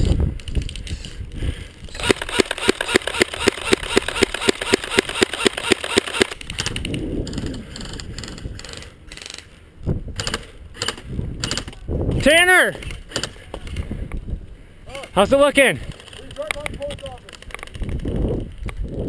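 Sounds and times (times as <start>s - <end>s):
airsoft gun firing rapidly: 2.0s - 6.4s.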